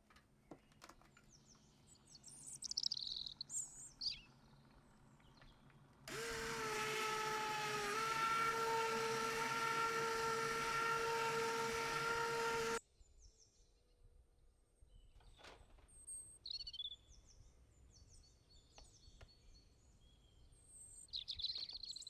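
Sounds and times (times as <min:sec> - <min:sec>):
blender motor whining: 0:06.1 - 0:12.8.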